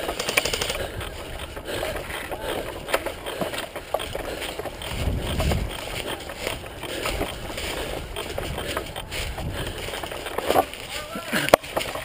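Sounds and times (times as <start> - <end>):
rustling: 0.0 - 12.0
wind rumble on microphone: 4.0 - 10.4.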